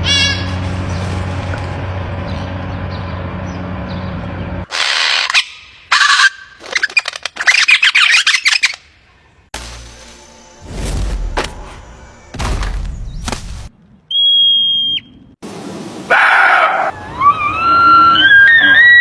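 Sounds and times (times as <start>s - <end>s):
low hum: 9.5s - 14.0s.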